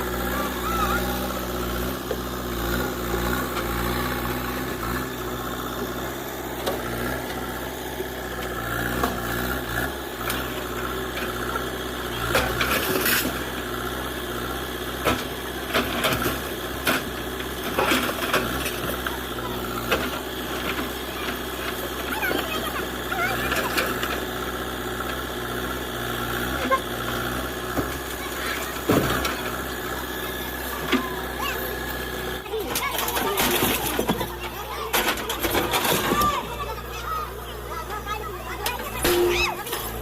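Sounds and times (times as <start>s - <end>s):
diesel engine idling: 0.0s - 40.0s.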